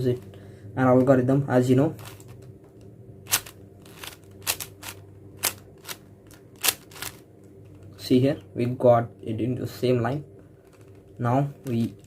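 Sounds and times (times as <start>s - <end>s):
plastic puzzle cube clicking: 6.6s - 7.2s.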